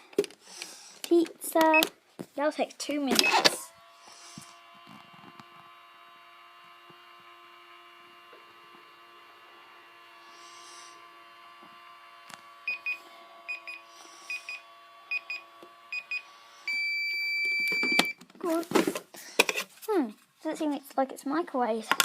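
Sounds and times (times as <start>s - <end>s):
toy microwave electronic hum: 3.0s - 18.3s.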